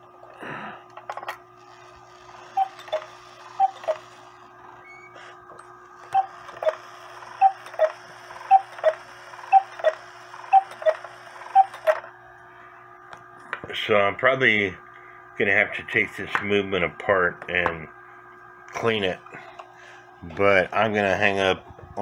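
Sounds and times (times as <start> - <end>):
cuckoo clock calling: 2.5 - 4.1, 6.1 - 12.0.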